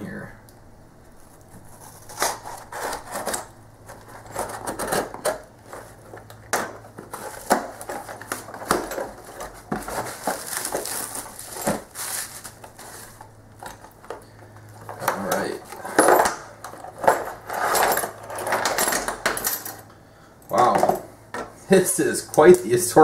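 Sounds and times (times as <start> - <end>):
package packaging rustling and tearing: 1.2 - 13.9.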